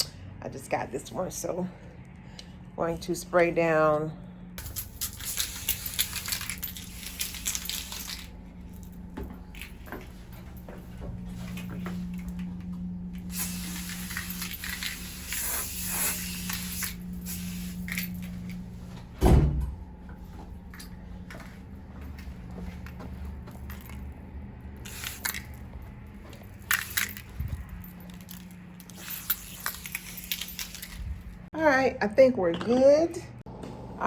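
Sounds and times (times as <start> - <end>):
steady low hum: 0.0 - 34.0
aerosol spray hissing: 13.3 - 17.9.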